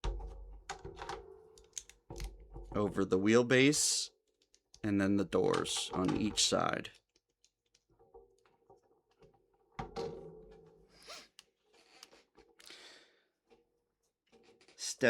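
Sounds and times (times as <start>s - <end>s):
thunk: 9.8s - 10.6s.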